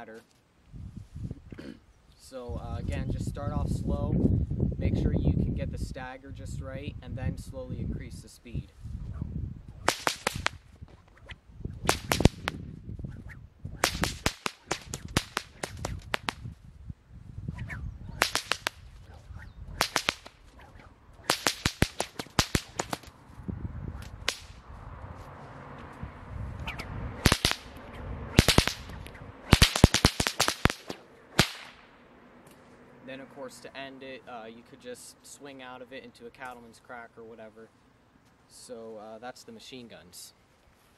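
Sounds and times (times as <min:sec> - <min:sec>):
whoosh of swinging whip: 0:09.0 - 0:16.6, 0:17.4 - 0:23.2, 0:23.9 - 0:31.8
whip cracking: 0:09.8 - 0:16.6, 0:17.5 - 0:23.2, 0:24.0 - 0:24.6, 0:26.6 - 0:31.9.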